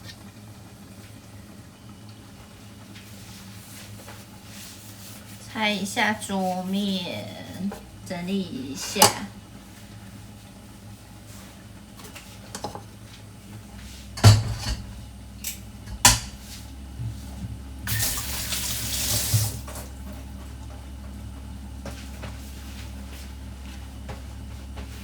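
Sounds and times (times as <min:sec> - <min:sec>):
kitchenware clattering: 0:08.8 - 0:09.3, 0:12.5 - 0:12.9, 0:14.2 - 0:16.4
tap running: 0:08.8 - 0:09.3, 0:14.2 - 0:16.4.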